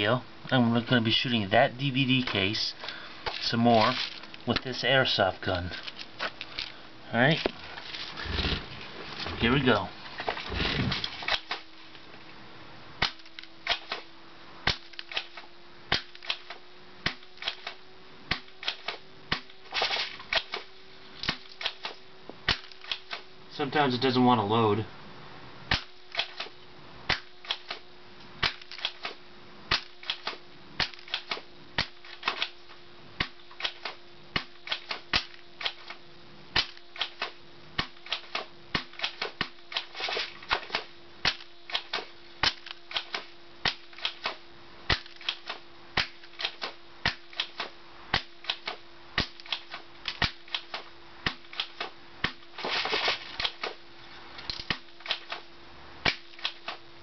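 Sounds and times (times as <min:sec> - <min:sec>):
faint steady hum: 0:00.0 - 0:57.0
airsoft shotgun pumping and firing: 0:08.2 - 0:09.4, 0:10.2 - 0:11.7, 0:13.0 - 0:23.3, 0:25.7 - 0:32.6, 0:33.2 - 0:36.0, 0:36.6 - 0:53.8, 0:54.5 - 0:56.9.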